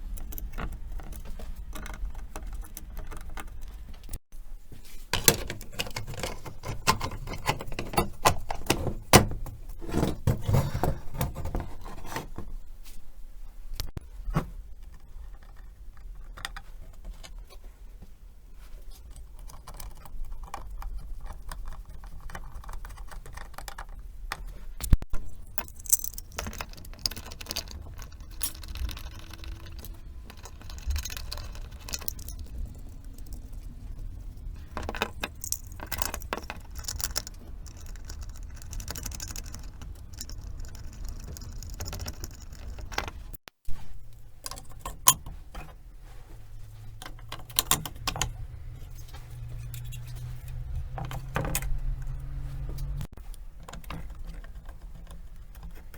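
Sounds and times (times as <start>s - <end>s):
small metal parts clinking: 25.2s - 43.3s.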